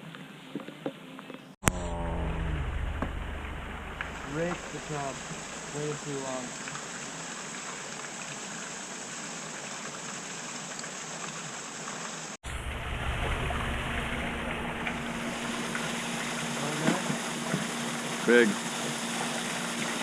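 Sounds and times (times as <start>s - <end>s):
steady hum: 1.6s - 6.8s, 12.4s - 20.0s
boat motor rumbling: 1.6s - 6.9s, 12.4s - 20.0s
rushing water: 2.1s - 20.0s.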